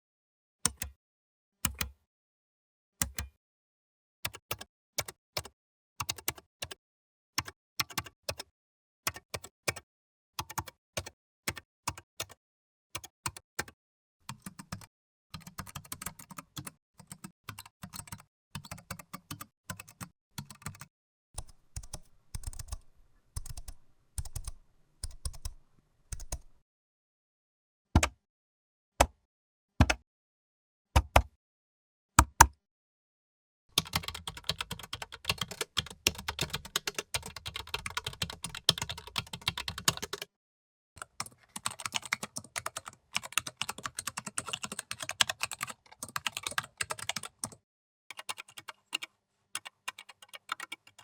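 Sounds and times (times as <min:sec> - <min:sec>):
keyboard typing clicks: 0:17.6 - 0:26.6, 0:33.8 - 0:40.3.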